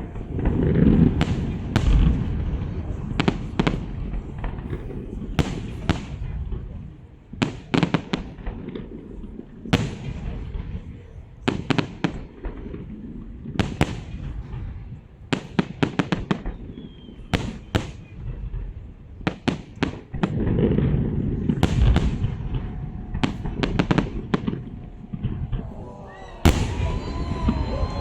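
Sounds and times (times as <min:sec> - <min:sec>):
low rumble of booms: 0:00.0 - 0:07.4, 0:20.4 - 0:25.8.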